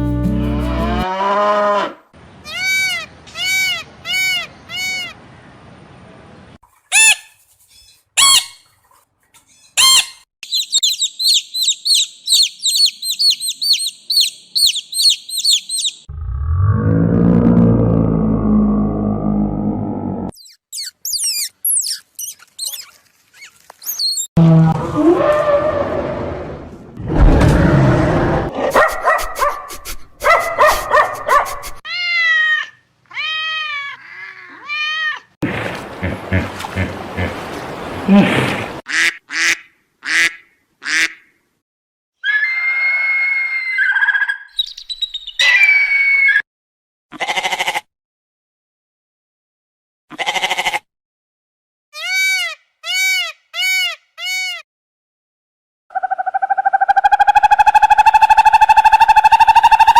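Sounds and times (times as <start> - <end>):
high repeated bird chirps: 9.8 - 16.1, 20.3 - 24.3, 43.9 - 45.5
lower sound: 16.1 - 20.3.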